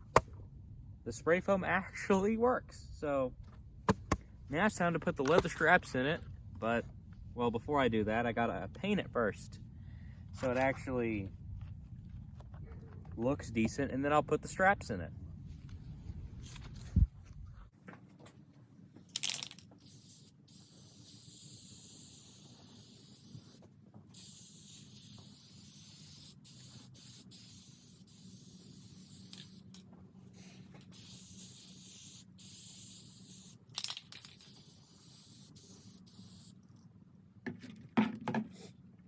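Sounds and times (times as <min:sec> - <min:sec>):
spray-paint can hissing: 0:19.8 - 0:29.8, 0:30.8 - 0:36.6.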